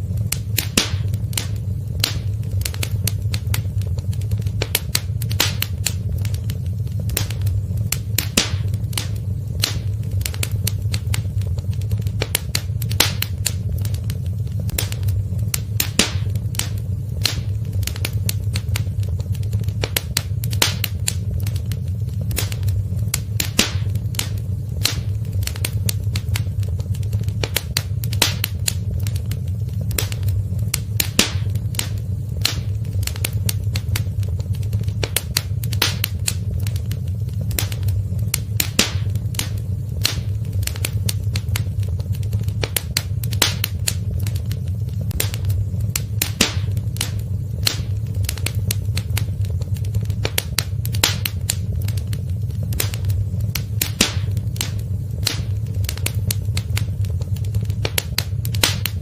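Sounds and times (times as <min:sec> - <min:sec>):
fire crackling in a fireplace: 0:00.0 - 0:59.0
low rumble: 0:00.0 - 0:59.0.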